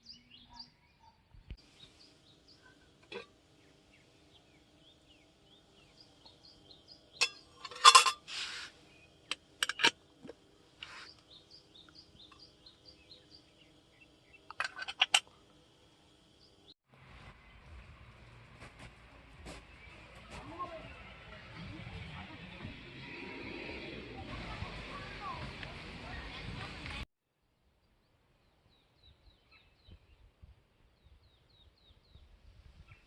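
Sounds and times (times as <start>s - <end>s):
small birds chirping: 0.0s - 9.6s, 10.7s - 16.8s, 28.4s - 33.0s
steady hiss: 8.0s - 9.6s.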